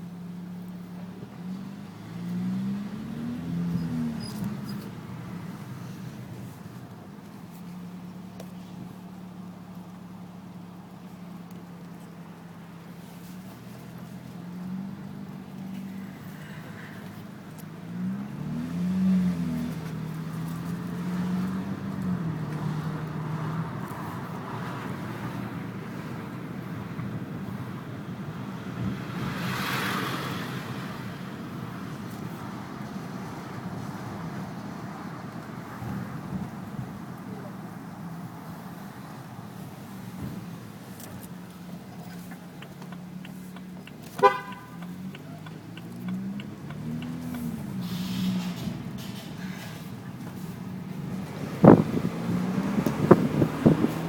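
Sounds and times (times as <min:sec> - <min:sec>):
road and tyre noise: 0:00.0 - 0:54.0
car rolling low drone: 0:30.6 - 0:54.0.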